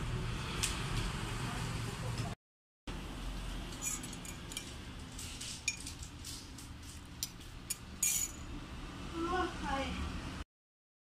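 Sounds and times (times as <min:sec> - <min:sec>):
utensils and dishware clinking: 0:03.7 - 0:06.3, 0:07.2 - 0:08.5.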